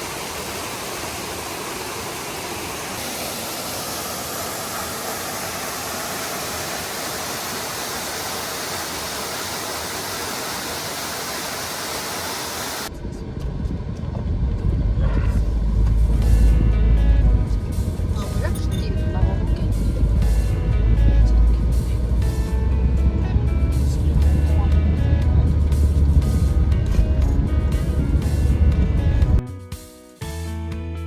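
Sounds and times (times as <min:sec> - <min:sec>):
waterfall rushing: 0:00.0 - 0:12.9
car rumbling on the move: 0:12.9 - 0:29.4.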